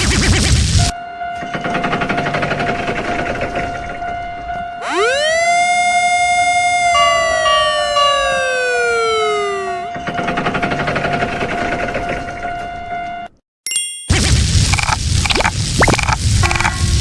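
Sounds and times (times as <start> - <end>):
synthesized siren sweep: 0.9 - 10.0, 14.7 - 16.7
steady electronic tone: 14.7 - 16.8.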